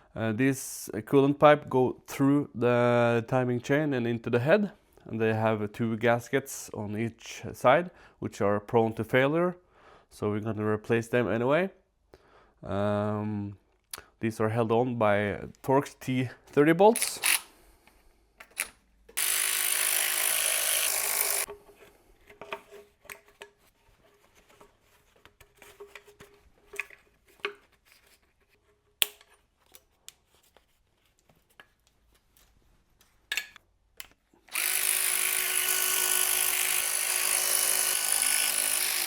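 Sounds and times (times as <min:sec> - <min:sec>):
cordless power tool spinning: 0:19.2 - 0:21.5, 0:34.4 - 0:39.0.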